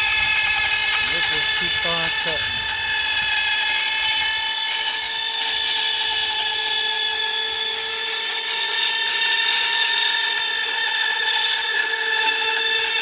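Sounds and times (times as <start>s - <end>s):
spiral saw whining: 0.0s - 13.0s.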